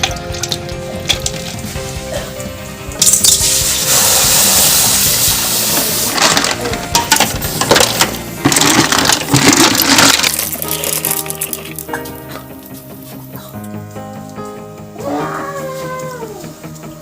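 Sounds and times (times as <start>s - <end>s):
clam shells clattering: 0.0s - 1.7s, 6.1s - 12.0s
steady hiss: 3.4s - 6.2s.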